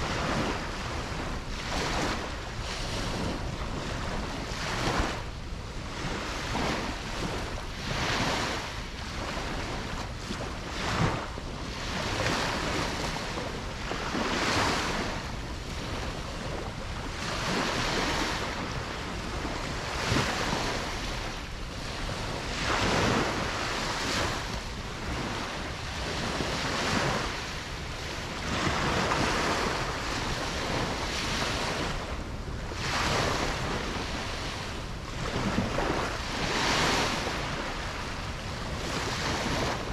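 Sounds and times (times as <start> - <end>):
ocean waves breaking on beach: 0.0 - 39.9
wind buffeting microphone: 0.0 - 39.9.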